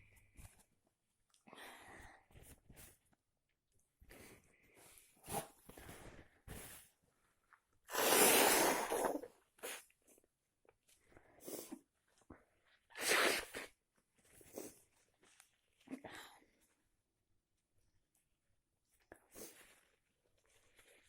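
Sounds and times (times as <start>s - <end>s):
person sneezing: 7.9s - 9.8s, 13.0s - 13.7s.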